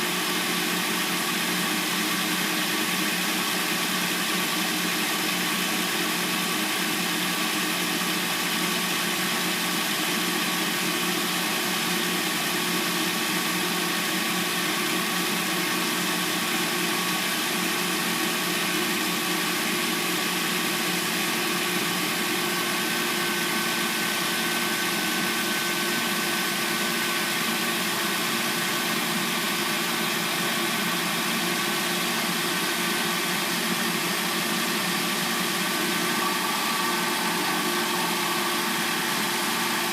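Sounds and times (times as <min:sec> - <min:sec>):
car engine idling: 0:00.1 - 0:39.9
thin high whine: 0:35.6 - 0:39.9.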